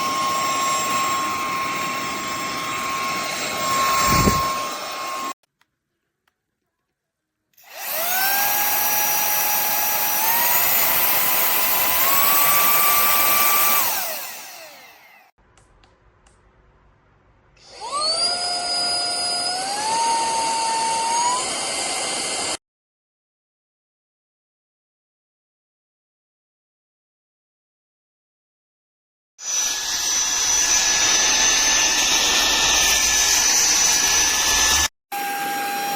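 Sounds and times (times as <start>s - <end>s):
handheld vacuum cleaner whining: 0.0s - 5.4s, 7.6s - 15.4s, 17.6s - 22.6s, 29.4s - 35.9s.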